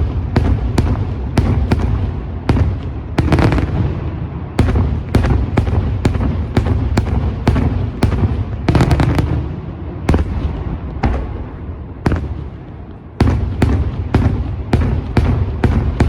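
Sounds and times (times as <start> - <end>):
firework bangs: 0.0 - 16.0.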